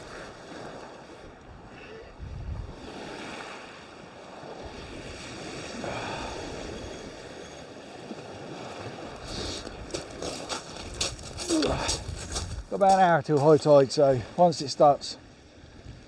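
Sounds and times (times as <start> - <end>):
small waves washing onto beach: 0.0 - 16.0
wind gusting on microphone: 1.5 - 3.4, 4.6 - 13.1.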